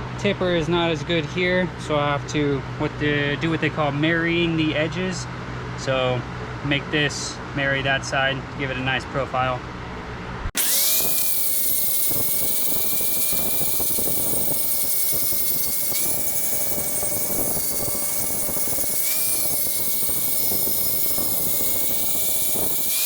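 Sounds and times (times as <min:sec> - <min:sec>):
power grinder grinding steel: 0:10.6 - 0:23.0.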